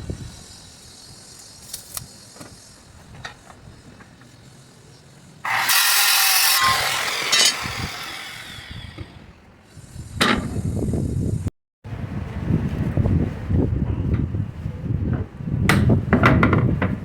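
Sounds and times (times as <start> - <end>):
power tool cutting wood: 5.4 - 9.2.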